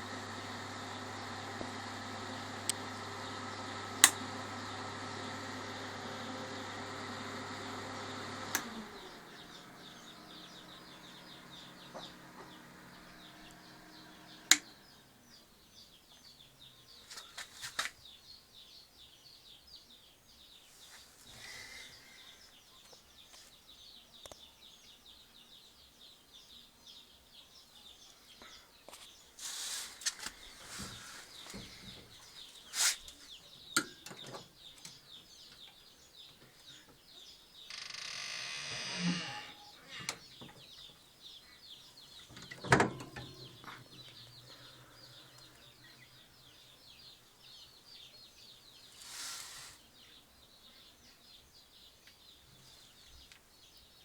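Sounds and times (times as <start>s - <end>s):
small birds chirping: 0.0s - 54.0s
rustling: 29.0s - 33.3s, 48.8s - 49.9s.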